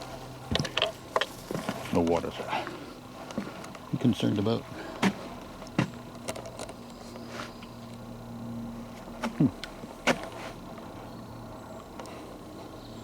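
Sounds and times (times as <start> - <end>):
footsteps on forest trail: 4.7 - 6.0.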